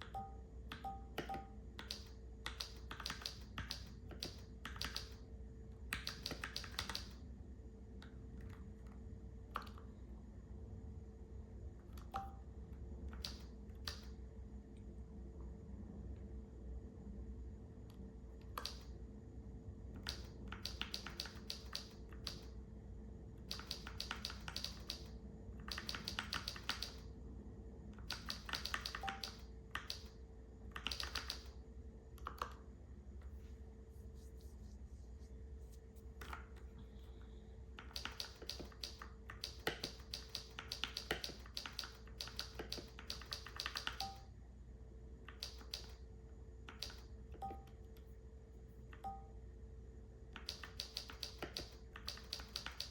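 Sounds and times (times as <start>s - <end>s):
mechanical keyboard typing: 0.0s - 5.2s, 5.9s - 7.2s, 20.0s - 22.5s, 23.5s - 27.0s, 28.0s - 31.6s, 37.8s - 44.2s, 45.3s - 46.0s, 46.7s - 47.6s, 50.4s - 52.9s.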